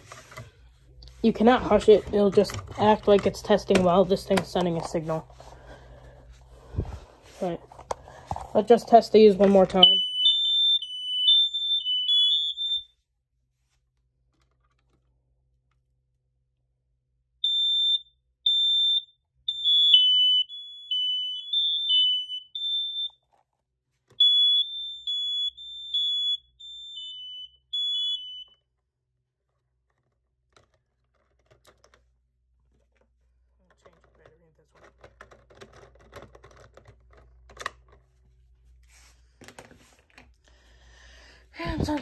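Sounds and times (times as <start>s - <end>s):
smoke alarms beeping: 9.6s - 12.9s, 17.4s - 23.2s, 24.2s - 28.6s.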